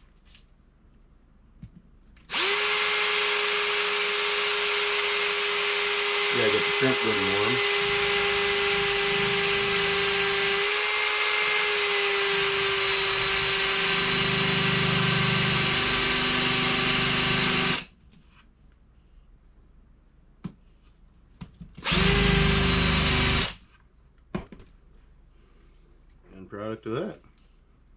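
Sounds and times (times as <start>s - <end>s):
electric drill motor whine: 2.3s - 17.9s, 21.8s - 23.6s.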